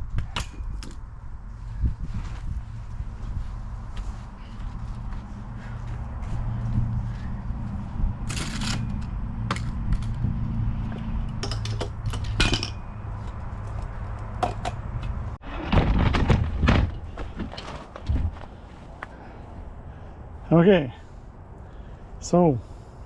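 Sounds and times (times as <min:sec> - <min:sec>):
low hum: 0:00.0 - 0:22.2
materials knocking and clinking: 0:11.3 - 0:13.0
clattering and rustling: 0:11.3 - 0:18.6.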